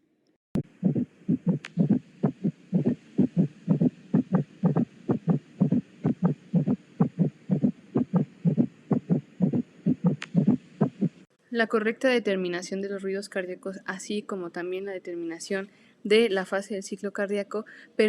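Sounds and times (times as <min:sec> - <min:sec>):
heartbeat lub-dub thumps: 0:00.6 - 0:11.3.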